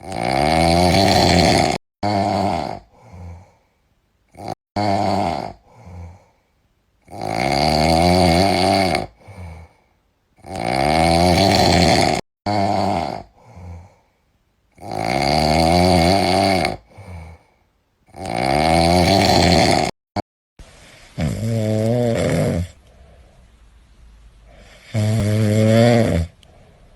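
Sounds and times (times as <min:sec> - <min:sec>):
cat snoring loudly: 0:00.0 - 0:03.5, 0:04.3 - 0:06.2, 0:07.0 - 0:09.7, 0:10.4 - 0:13.9, 0:14.8 - 0:17.4, 0:18.1 - 0:20.0, 0:20.8 - 0:23.3, 0:24.5 - 0:26.7
steady hiss: 0:20.6 - 0:21.2.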